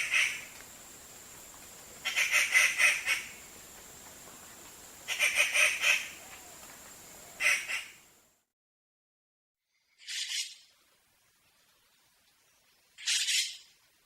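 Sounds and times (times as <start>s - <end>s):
bird chattering rattle calls: 0.0s - 0.5s, 2.0s - 3.4s, 5.1s - 6.2s, 7.4s - 8.0s, 10.0s - 10.6s, 13.0s - 13.7s.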